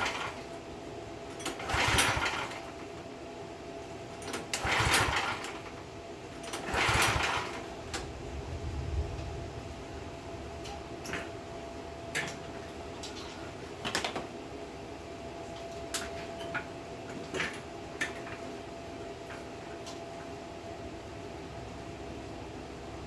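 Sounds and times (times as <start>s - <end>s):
steady background hum: 0.0s - 23.0s.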